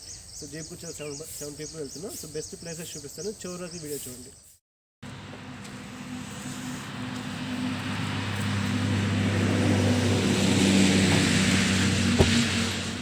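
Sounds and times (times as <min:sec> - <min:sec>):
road and wind noise: 0:05.0 - 0:13.0
vehicle engine running: 0:05.0 - 0:13.0.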